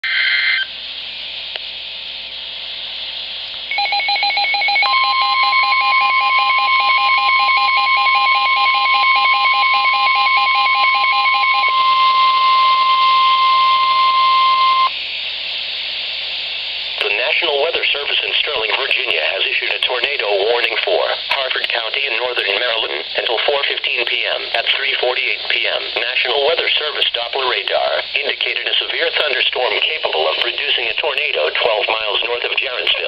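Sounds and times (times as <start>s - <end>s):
radio hiss: 0.0s - 3.7s, 12.2s - 33.0s
steady warning alarm tone: 3.7s - 15.1s
fast pulsing electronic beeps: 5.4s - 14.9s.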